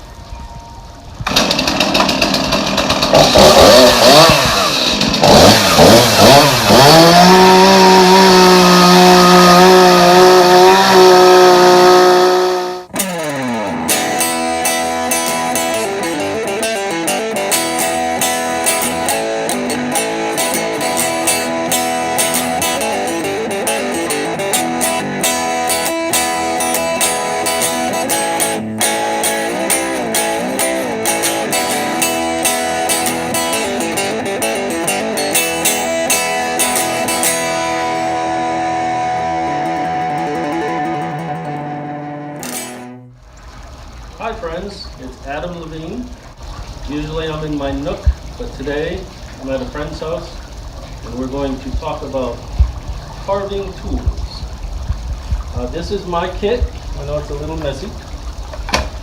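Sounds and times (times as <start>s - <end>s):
guitar music: 0.0s - 43.2s
chainsaw revving: 1.2s - 43.0s.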